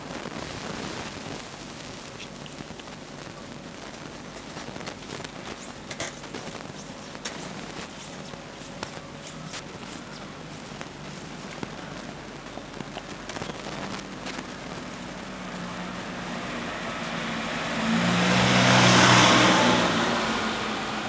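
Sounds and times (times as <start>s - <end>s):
background hiss: 0.0s - 21.0s
car passing by: 15.3s - 21.0s.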